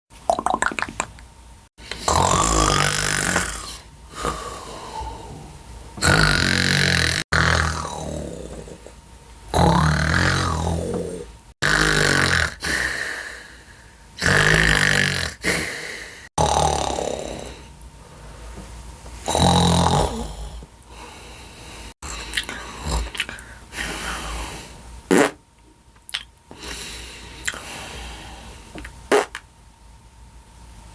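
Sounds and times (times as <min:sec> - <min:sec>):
person snoring: 0:01.8 - 0:17.7, 0:19.2 - 0:24.8.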